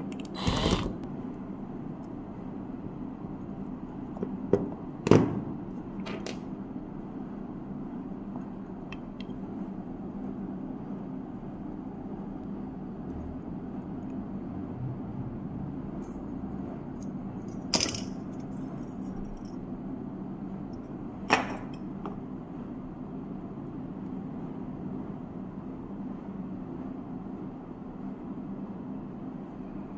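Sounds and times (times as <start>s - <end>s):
hot air gun blower humming: 0.0s - 1.1s.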